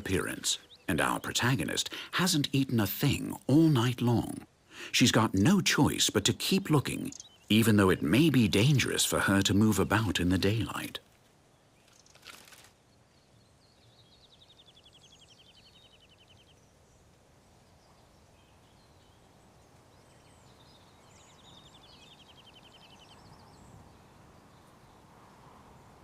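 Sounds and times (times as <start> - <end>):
bird chirps: 0.0 - 25.1
outdoor ambience hiss: 0.0 - 26.0
bird trilling: 6.0 - 10.9.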